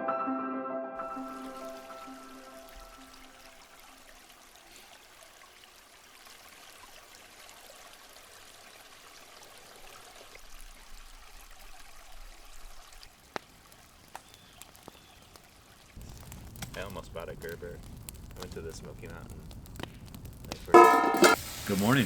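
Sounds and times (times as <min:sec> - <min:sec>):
stream water flowing: 0:01.2 - 0:14.0.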